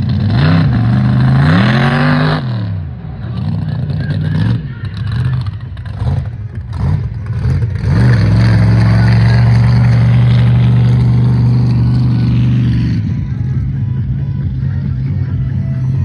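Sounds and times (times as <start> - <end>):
off-road vehicle engine revving: 0.0 - 16.0.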